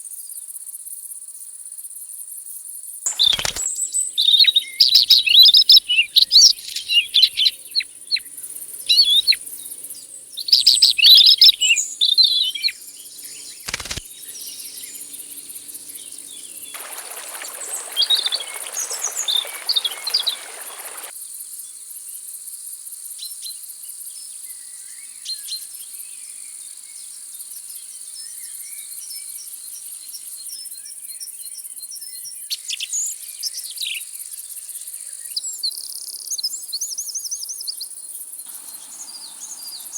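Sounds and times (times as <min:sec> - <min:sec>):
birds calling and chirping: 0:03.1 - 0:09.7, 0:10.4 - 0:21.1
sharp click: 0:13.7 - 0:14.0.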